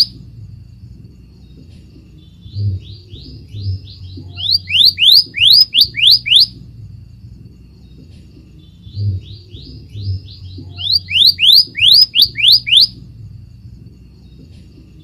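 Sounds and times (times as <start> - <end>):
bird upward-sweeping whistles: 4.0 - 6.5, 10.4 - 13.0.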